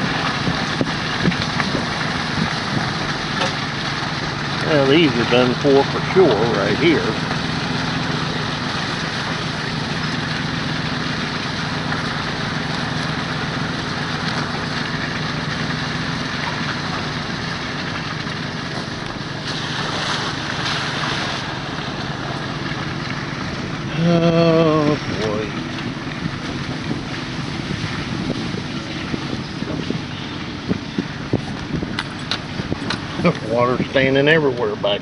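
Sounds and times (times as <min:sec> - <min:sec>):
vehicle engine humming: 0:00.0 - 0:35.0
wind: 0:00.0 - 0:35.0.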